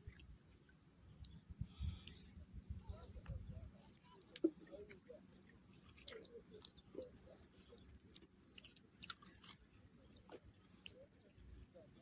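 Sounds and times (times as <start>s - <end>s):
soft wet clicks: 1.2s - 1.4s, 3.2s - 11.3s
chewing and biting food: 7.4s - 9.7s.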